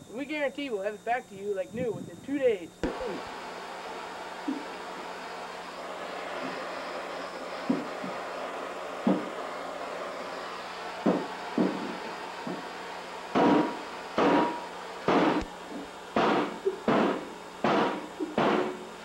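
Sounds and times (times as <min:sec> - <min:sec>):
steady background hum: 0:00.0 - 0:19.0
sharp hammer-like knocks: 0:13.4 - 0:15.5, 0:16.2 - 0:18.8.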